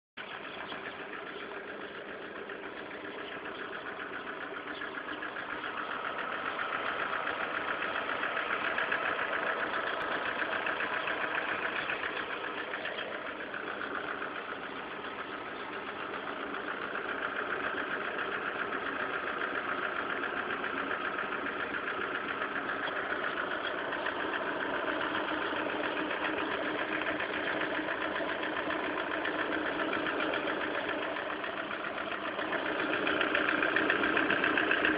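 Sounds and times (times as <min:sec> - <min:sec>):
car engine idling: 0:00.2 - 0:34.9
rapid metallic clacking: 0:00.2 - 0:34.9.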